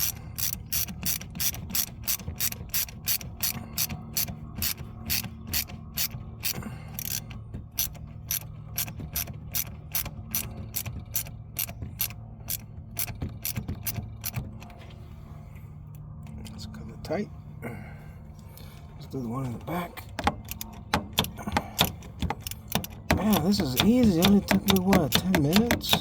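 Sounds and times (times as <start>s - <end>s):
hand ratchet clicking: 0.0s - 14.4s, 20.1s - 26.0s.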